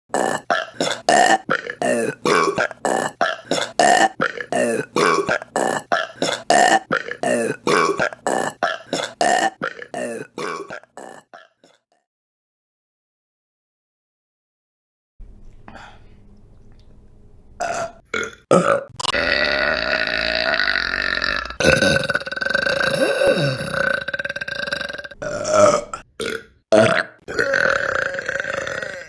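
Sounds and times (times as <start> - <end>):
short burps: 17.6 - 29.0.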